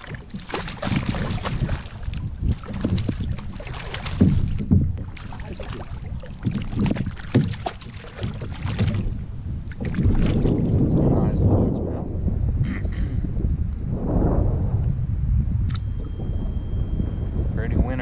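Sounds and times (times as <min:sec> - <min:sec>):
paddle splashing water: 0:00.0 - 0:10.9
wind rumble on microphone: 0:00.0 - 0:18.0.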